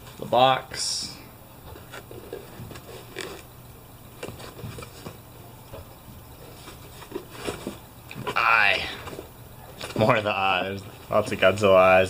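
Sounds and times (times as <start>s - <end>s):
steady low hum: 0.0s - 12.0s
cardboard box scraping and tapping: 6.5s - 8.4s.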